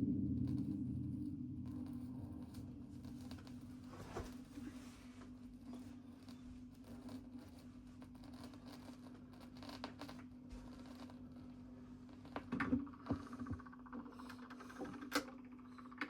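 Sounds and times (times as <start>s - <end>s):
low hum: 0.0s - 9.4s
vinyl surface noise: 0.2s - 14.2s.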